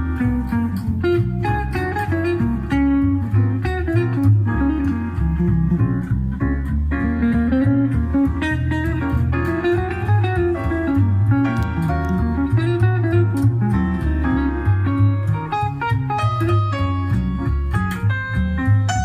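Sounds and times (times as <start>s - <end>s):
plucked guitar music: 0.0s - 19.0s
strong bass line: 0.0s - 19.0s.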